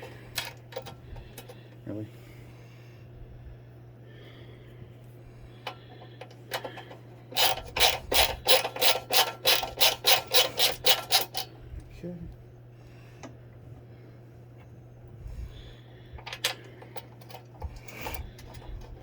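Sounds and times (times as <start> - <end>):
ratchet wrench clicking: 7.4 - 11.5.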